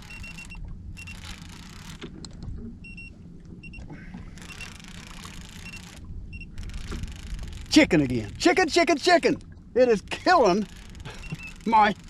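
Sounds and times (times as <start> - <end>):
short high electronic beeps: 0.0 - 1.2, 11.2 - 11.7
steady low rumble: 0.0 - 12.0.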